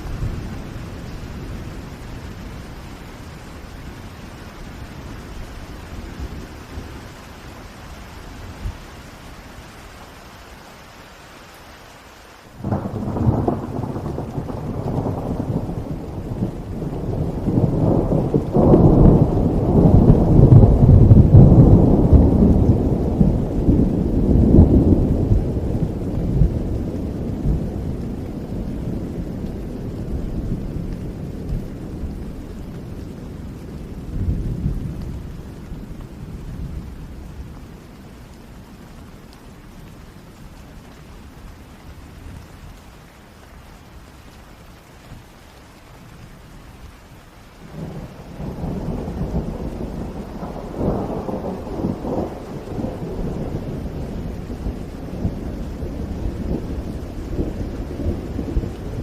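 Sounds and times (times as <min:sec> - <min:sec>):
steady rain: 0:00.0 - 0:59.0
thunder rumbling: 0:12.6 - 0:42.8, 0:47.6 - 0:59.0.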